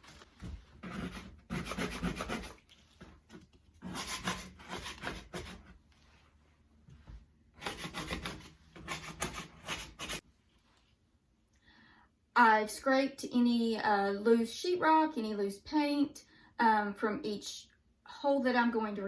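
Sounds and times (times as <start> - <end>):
putty knife scraping drywall: 0.0 - 5.8, 7.6 - 10.2.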